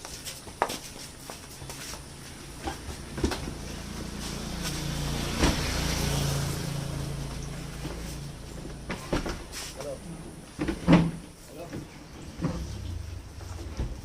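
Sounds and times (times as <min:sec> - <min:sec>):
vehicle passing by: 0:01.8 - 0:10.6, 0:11.2 - 0:14.0.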